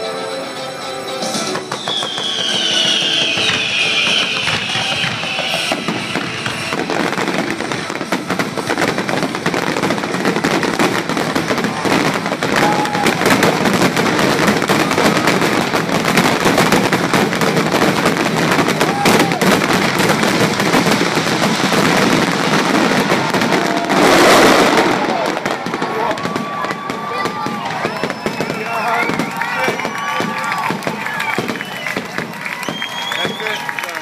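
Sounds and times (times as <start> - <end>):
music: 0.0 - 4.8
firework whistle: 0.0 - 34.0
fireworks crackling and popping: 1.1 - 34.0.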